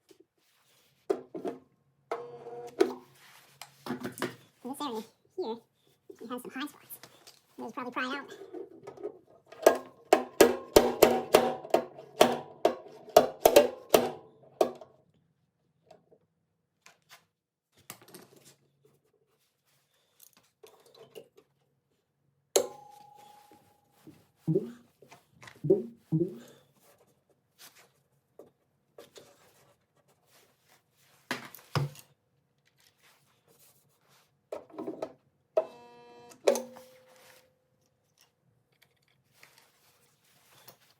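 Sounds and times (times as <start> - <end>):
hammer strikes on metal panel: 10.2 - 14.2.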